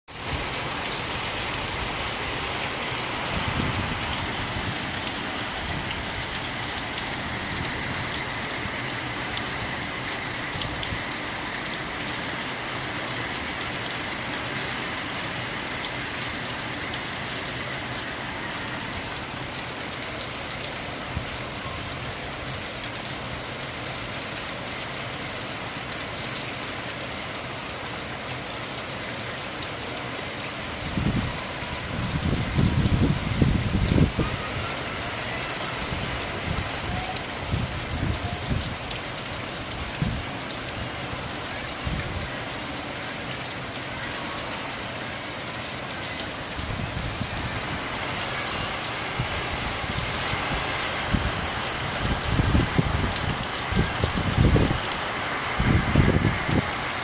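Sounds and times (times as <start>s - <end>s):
steady rain falling: 0.1s - 57.0s.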